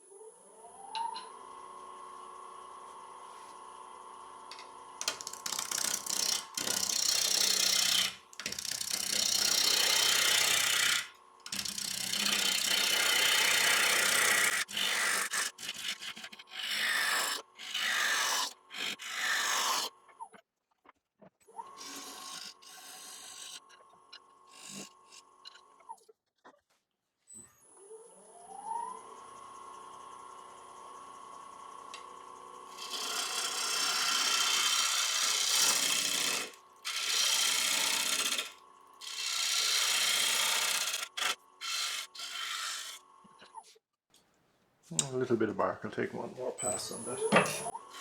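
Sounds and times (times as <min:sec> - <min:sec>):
lathe whine: 0:01.6 - 0:19.9, 0:21.8 - 0:23.6, 0:28.9 - 0:43.0
gouge shearing wood shavings: 0:05.0 - 0:19.9, 0:21.8 - 0:23.6, 0:24.5 - 0:25.2, 0:32.7 - 0:43.0.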